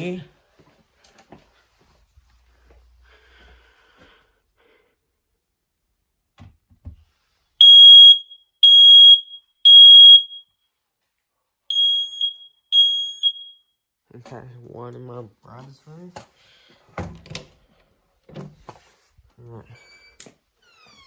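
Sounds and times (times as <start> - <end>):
smoke alarm beeps: 7.6 - 10.6, 11.7 - 13.8.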